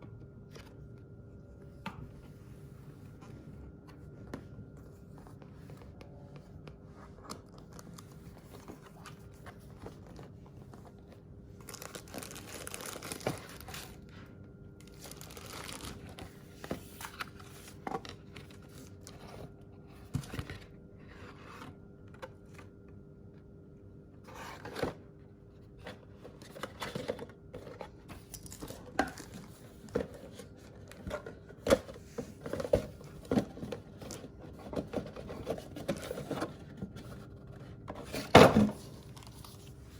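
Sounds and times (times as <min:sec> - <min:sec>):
packaging tearing and crinkling: 0:11.7 - 0:13.9, 0:15.0 - 0:16.0.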